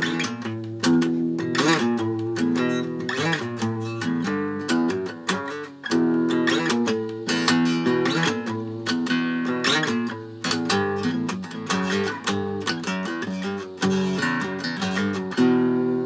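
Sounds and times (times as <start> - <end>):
guitar strumming: 0.0 - 16.0.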